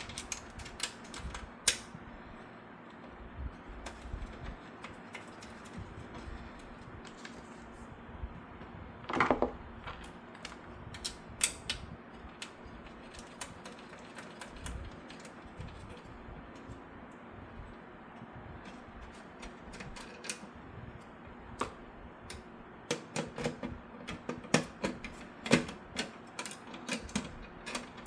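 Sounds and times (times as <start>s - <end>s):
computer case hardware clicking: 0.0s - 2.0s, 21.6s - 28.0s.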